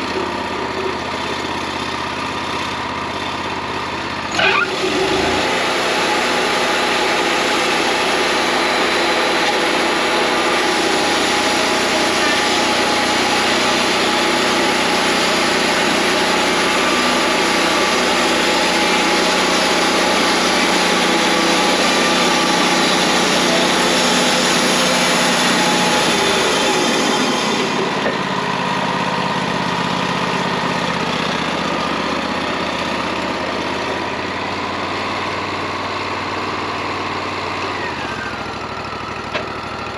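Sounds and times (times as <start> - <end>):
bandsaw cutting wood: 4.3 - 31.9.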